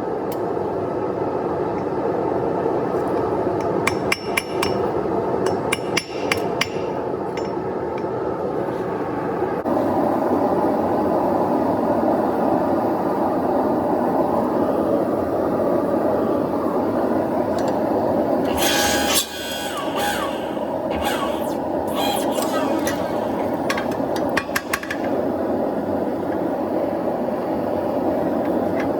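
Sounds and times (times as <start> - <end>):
hammer striking steel on anvil: 3.9 - 7.6.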